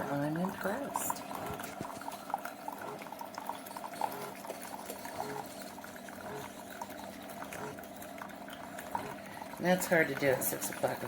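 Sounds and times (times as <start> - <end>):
coffee streaming into glass mug: 0.0 - 11.0
gurgling pops: 0.0 - 11.0.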